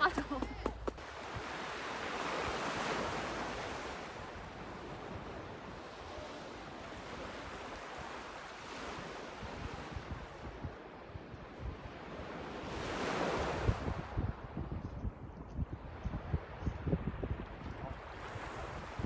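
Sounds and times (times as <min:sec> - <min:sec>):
sea waves washing onto shore: 0:00.0 - 0:09.9
wind on microphone: 0:00.0 - 0:19.0.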